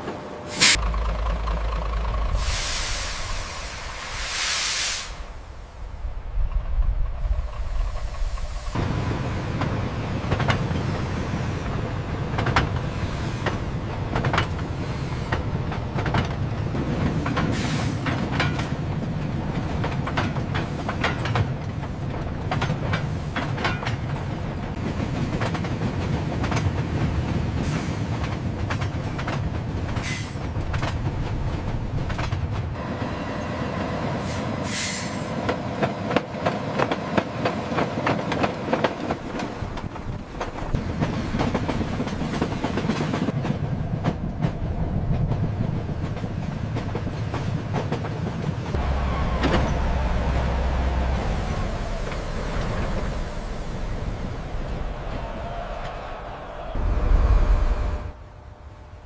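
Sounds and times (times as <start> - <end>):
train rumbling on track: 0.0 - 59.0
short hiss: 0.5 - 0.8, 2.4 - 5.4
wheels clicking over rail joints: 35.4 - 53.2.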